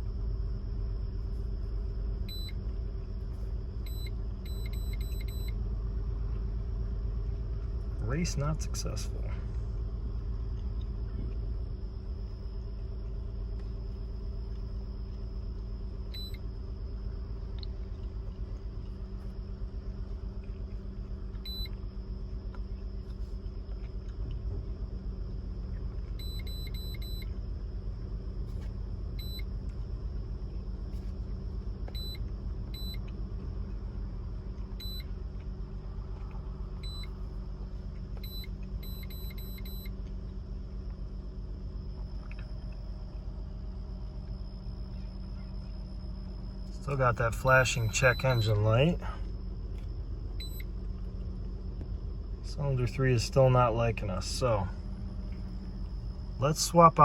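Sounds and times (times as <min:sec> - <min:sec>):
car engine idling with misfire: 0:05.2 - 0:10.3, 0:44.6 - 0:57.0.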